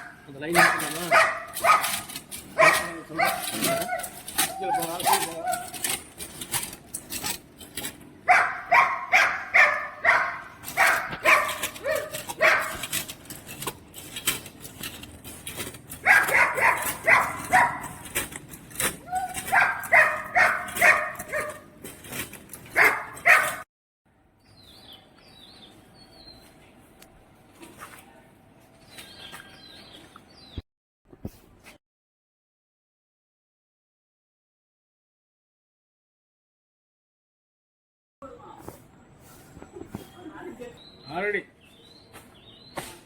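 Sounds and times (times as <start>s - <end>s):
dog barking rapidly: 0.0s - 6.0s, 8.2s - 13.1s, 15.9s - 18.1s, 19.0s - 21.8s, 22.7s - 23.6s.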